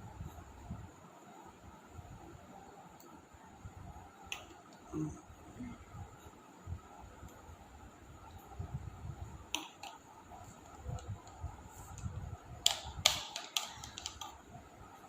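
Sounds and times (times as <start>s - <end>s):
handling clicks and crackles: 9.5s - 14.5s.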